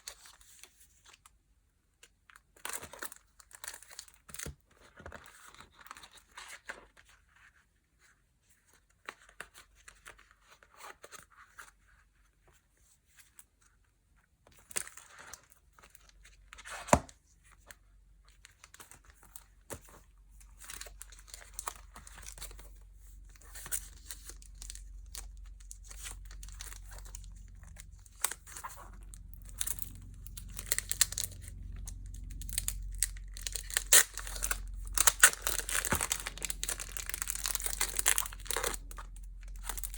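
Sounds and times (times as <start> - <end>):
packaging crinkling and tearing: 18.3 - 39.9
low rumble: 23.2 - 39.9.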